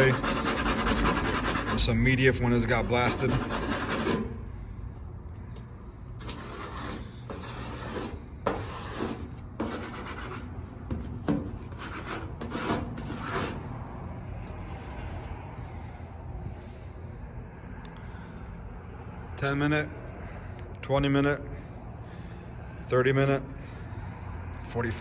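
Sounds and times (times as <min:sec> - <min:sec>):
scraping strokes on car paint: 0:00.0 - 0:04.5, 0:06.2 - 0:15.9.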